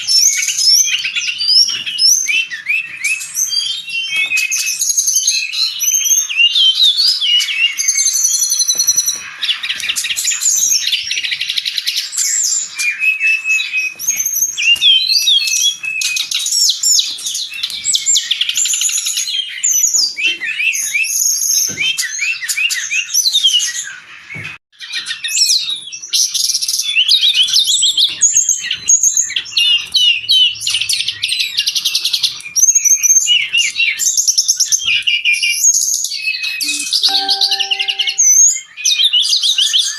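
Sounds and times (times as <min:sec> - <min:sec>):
bird singing high chirps: 0:36.6 - 0:38.5.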